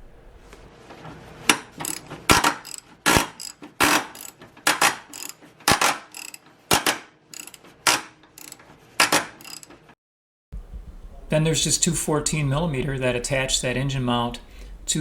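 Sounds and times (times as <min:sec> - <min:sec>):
socket ratchet clicking: 0:01.8 - 0:09.7.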